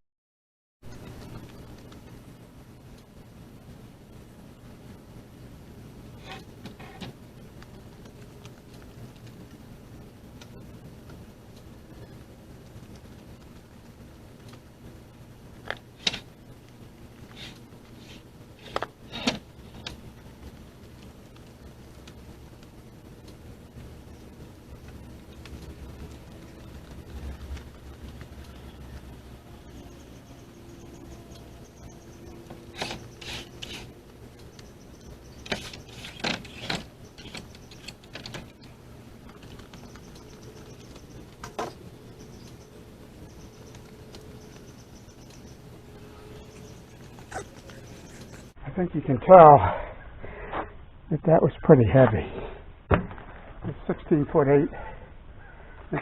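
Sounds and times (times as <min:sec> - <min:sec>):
steady low hum: 0:00.8 - 0:56.0
sharp knocks and clunks: 0:52.9 - 0:53.3.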